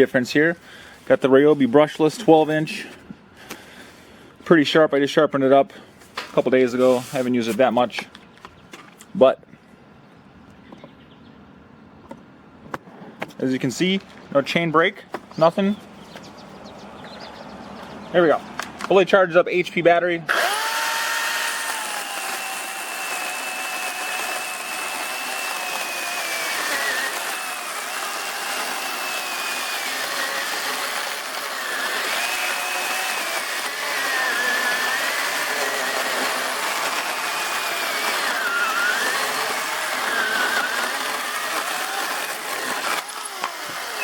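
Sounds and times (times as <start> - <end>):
chainsaw cutting wood: 20.3 - 44.0.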